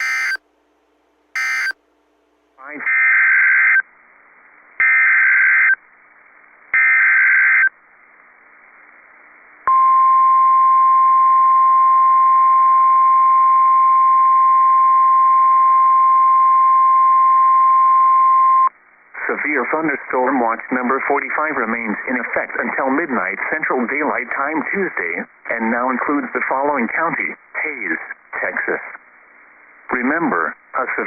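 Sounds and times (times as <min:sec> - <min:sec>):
steady warning alarm tone: 0:00.0 - 0:00.4, 0:01.4 - 0:01.8
warbling data bursts: 0:00.0 - 0:00.4, 0:01.4 - 0:01.8.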